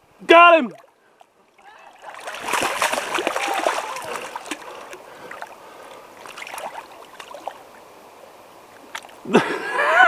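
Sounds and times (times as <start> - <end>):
river running: 0.0 - 10.0
fish thrashing and splashing: 1.5 - 7.6.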